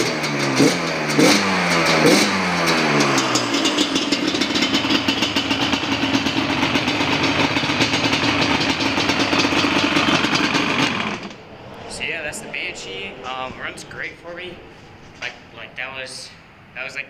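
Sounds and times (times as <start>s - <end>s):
two-stroke engine idling: 0.0s - 11.4s.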